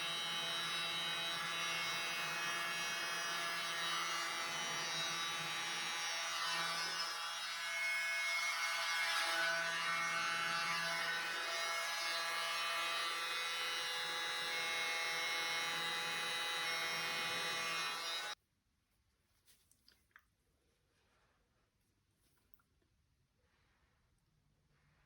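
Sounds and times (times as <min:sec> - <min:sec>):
electric air blower running: 0:00.0 - 0:07.3, 0:09.9 - 0:18.4.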